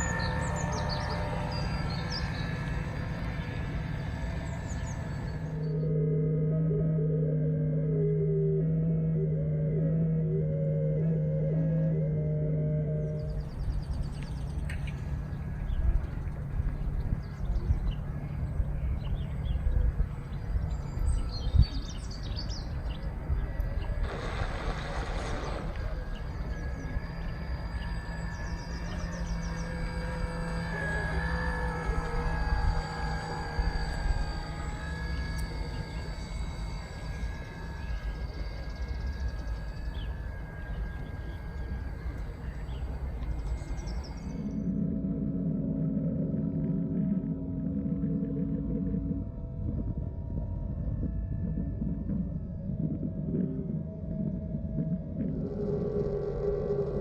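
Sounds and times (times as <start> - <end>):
small birds chirping: 0.0 - 5.7, 13.1 - 44.6
electric motor whine: 0.0 - 57.0
low hum: 0.0 - 57.0
low outdoor rumble: 0.0 - 57.0.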